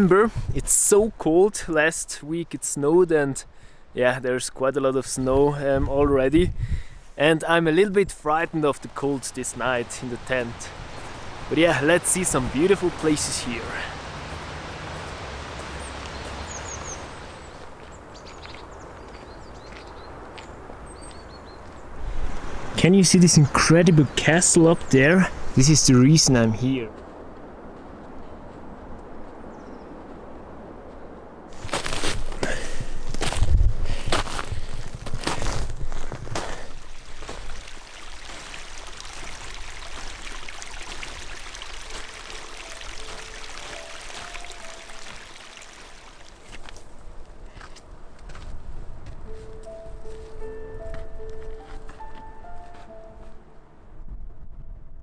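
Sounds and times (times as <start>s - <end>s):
steady outdoor hiss: 0.0s - 34.5s, 36.4s - 54.2s
running water rushing: 8.2s - 26.8s, 36.6s - 47.2s
small birds chirping: 9.8s - 25.6s.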